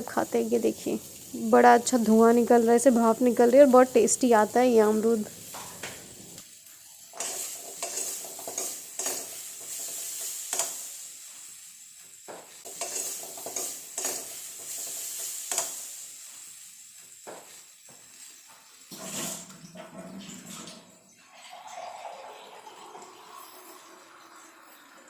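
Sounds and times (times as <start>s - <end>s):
soft sizzle: 0.0s - 25.0s
spatula scraping a pan: 7.2s - 10.9s, 12.6s - 15.8s, 18.2s - 19.7s.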